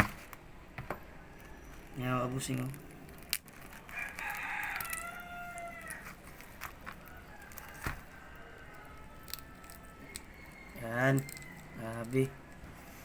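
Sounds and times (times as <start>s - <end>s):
rooster crowing: 3.9s - 6.2s, 6.9s - 13.0s.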